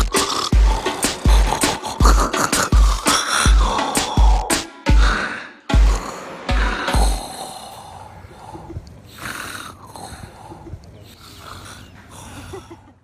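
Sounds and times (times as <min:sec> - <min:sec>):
man snoring: 0:00.0 - 0:12.6.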